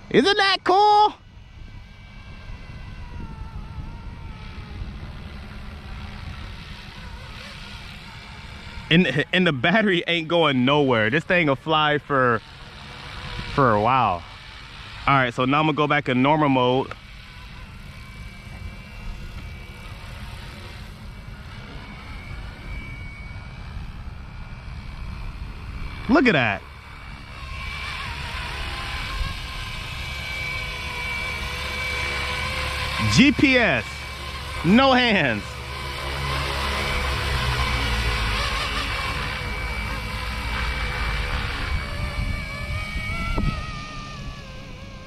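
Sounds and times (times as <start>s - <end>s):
rc helicopter rotor whine: 0.0s - 45.0s
wind rumble on microphone: 1.6s - 6.8s, 41.1s - 45.0s.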